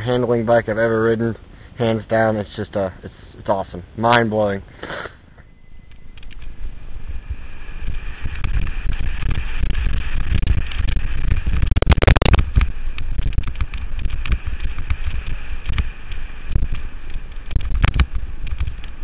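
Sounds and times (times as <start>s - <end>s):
wind buffeting microphone: 5.6s - 19.0s
bike tyres rattling on rough ground: 6.0s - 19.0s.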